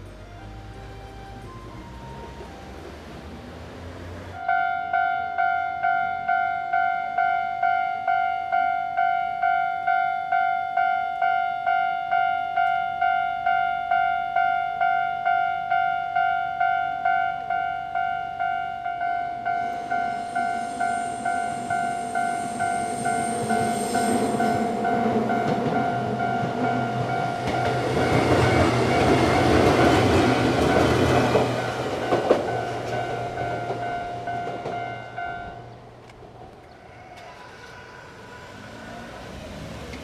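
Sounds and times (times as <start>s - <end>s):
level-crossing alarm bell: 0.0s - 3.0s, 4.4s - 35.7s
electric train rumbling and clattering: 0.0s - 4.5s, 12.5s - 40.0s.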